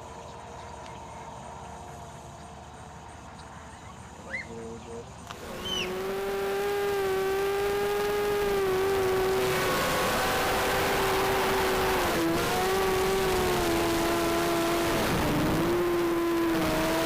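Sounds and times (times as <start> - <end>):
quadcopter motors whining: 5.3 - 17.0.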